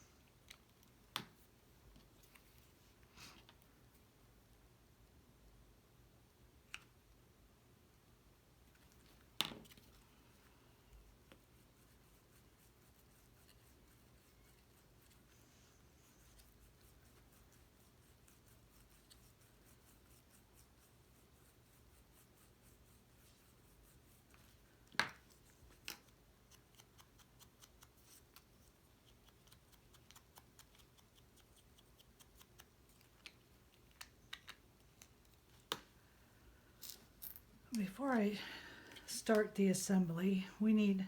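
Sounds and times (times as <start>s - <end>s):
small clicks and taps: 32.3s - 35.9s.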